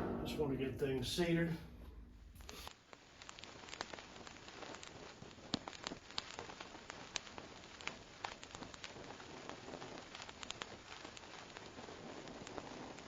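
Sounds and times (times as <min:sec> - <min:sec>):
low hiss: 0:00.0 - 0:13.0.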